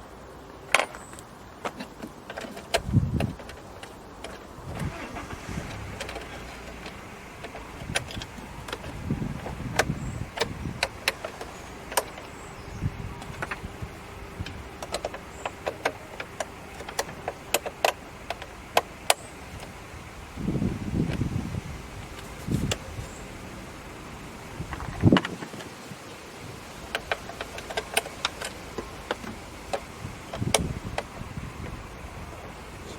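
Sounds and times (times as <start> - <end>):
sharp clicks and taps: 13.2 - 19.8.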